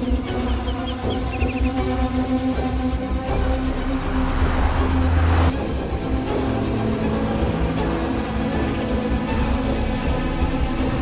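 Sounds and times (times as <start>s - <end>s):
background music: 0.0s - 11.0s
vehicle rumble: 3.0s - 11.0s.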